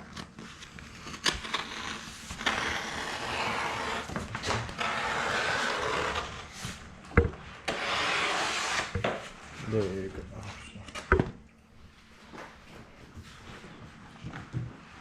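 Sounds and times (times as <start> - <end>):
knife cutting plastic film: 0.0 - 6.8.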